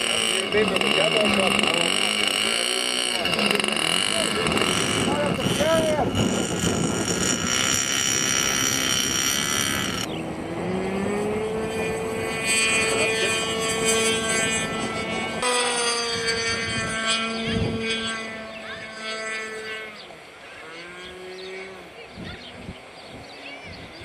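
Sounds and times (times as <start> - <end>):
model airplane engine running: 0.0 - 24.0
wind rushing on microphone: 3.2 - 19.6, 22.1 - 24.0.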